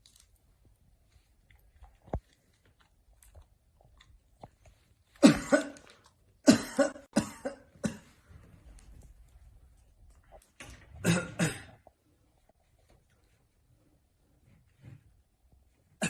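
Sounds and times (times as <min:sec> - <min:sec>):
man coughing: 0:05.2 - 0:08.1, 0:11.0 - 0:11.8.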